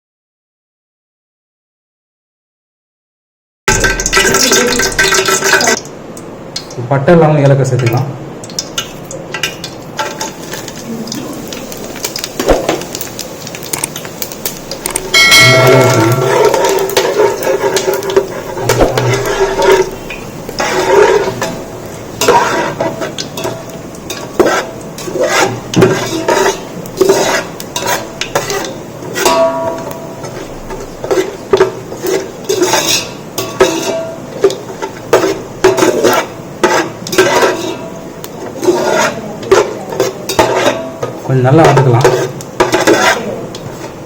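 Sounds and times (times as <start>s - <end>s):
spices frying in hot oil: 3.7s - 44.0s
metal ladle scraping a pot: 14.8s - 44.0s.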